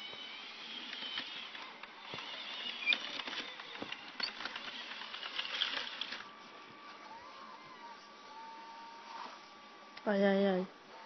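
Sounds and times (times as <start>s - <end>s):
electric motor and gear whine: 0.0s - 11.0s
tracks clicking and rattling: 0.8s - 6.3s.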